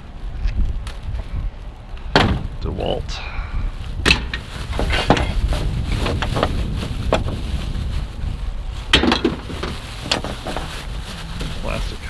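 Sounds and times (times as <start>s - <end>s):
wind rumble on microphone: 0.0s - 12.0s
debris knocking and rattling: 8.9s - 10.7s.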